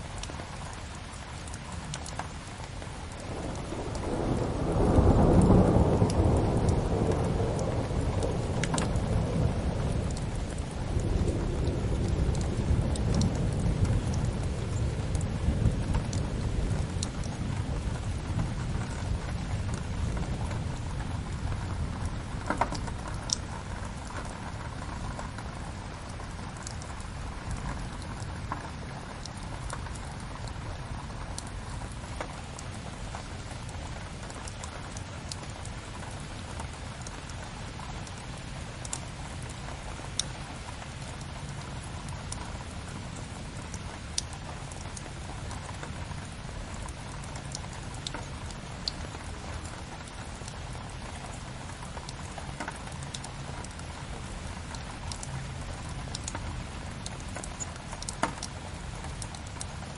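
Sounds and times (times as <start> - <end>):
fireplace fire crackling: 0.0 - 59.9
steady rain: 0.0 - 59.9
thunder rumbling: 3.2 - 31.5.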